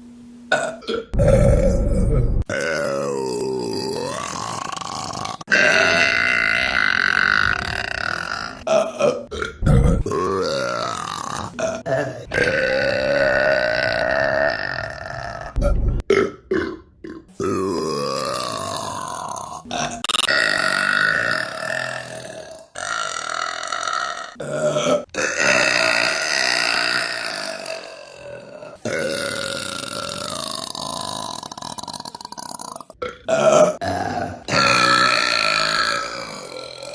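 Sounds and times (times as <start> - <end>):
women burping: 0.5 - 36.9.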